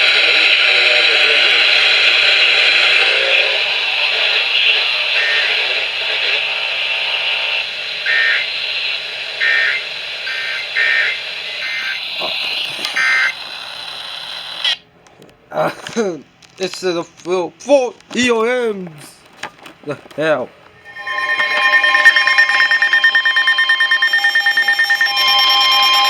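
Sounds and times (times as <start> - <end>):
radio hiss and static: 0.0 - 14.8
two-tone data chirps: 9.4 - 14.8, 20.7 - 26.0.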